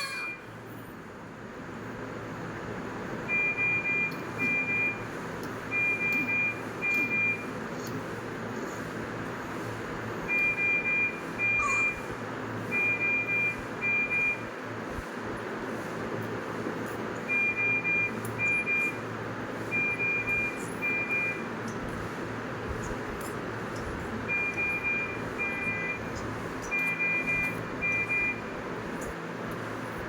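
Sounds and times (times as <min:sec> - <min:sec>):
patient monitor beeping: 0:03.3 - 0:05.1, 0:05.7 - 0:07.6, 0:10.2 - 0:12.1, 0:12.7 - 0:14.6, 0:17.3 - 0:21.8, 0:24.2 - 0:29.0.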